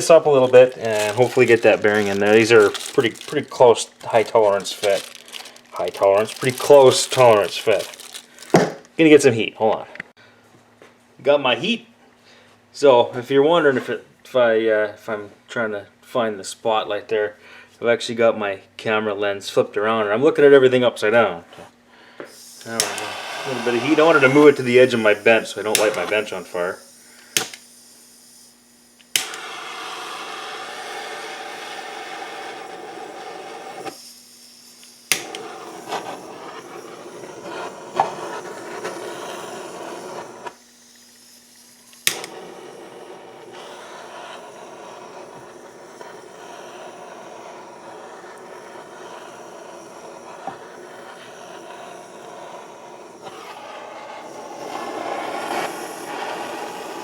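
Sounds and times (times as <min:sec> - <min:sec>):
gas torch flame hissing: 0:00.0 - 0:09.1, 0:22.2 - 0:57.0
gas torch igniter click: 0:22.3 - 0:26.4, 0:27.1 - 0:57.0.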